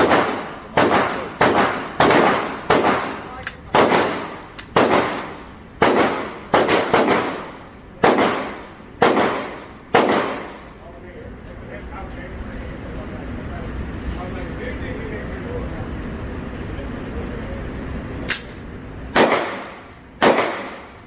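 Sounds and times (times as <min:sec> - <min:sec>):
rifle shots echoing: 0:00.0 - 0:10.8, 0:19.1 - 0:20.9.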